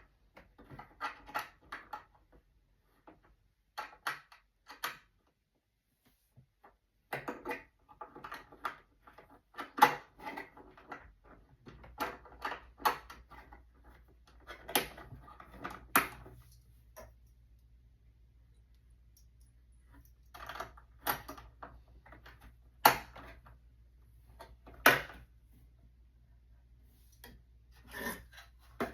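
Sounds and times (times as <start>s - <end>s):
low steady hum: 13.4s - 28.9s.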